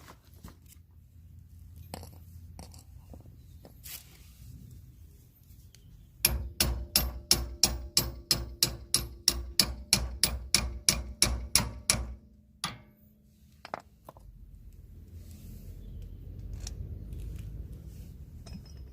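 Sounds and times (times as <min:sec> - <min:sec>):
hammer blows with metallic ring: 0:06.2 - 0:13.4.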